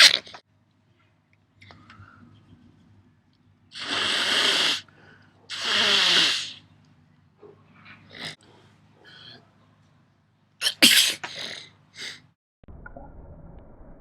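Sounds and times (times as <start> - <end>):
person sneezing: 0.0 - 0.3, 10.6 - 12.2.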